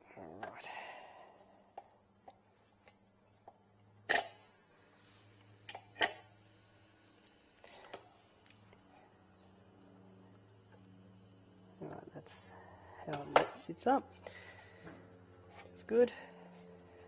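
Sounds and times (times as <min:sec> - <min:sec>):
metal tool parts clicking: 0:04.1 - 0:04.4.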